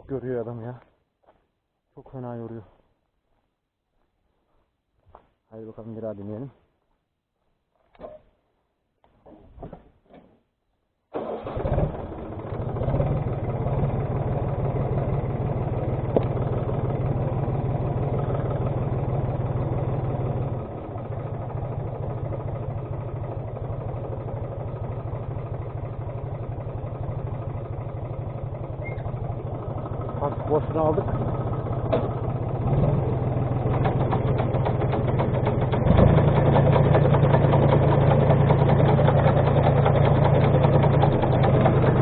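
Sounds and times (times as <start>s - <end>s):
tractor diesel engine running: 11.1s - 42.0s.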